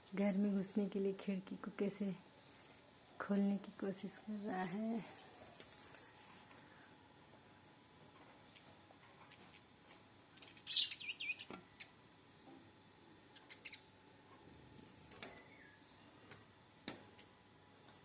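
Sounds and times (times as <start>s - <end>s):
small bird chirping: 8.3s - 14.0s.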